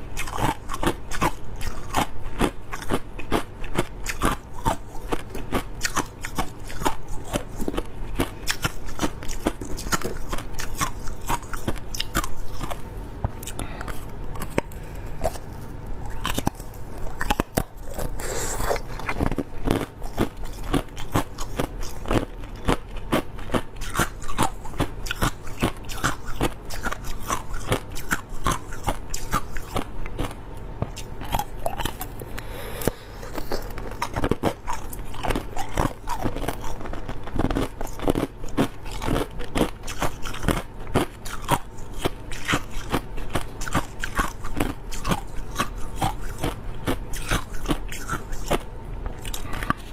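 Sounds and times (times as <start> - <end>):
ice being chewed: 0.1 - 49.9.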